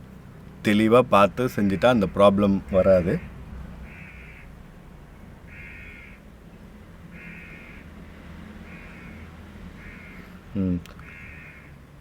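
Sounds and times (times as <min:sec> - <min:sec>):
bird calling: 0:01.4 - 0:07.9, 0:08.6 - 0:10.3, 0:10.9 - 0:11.7.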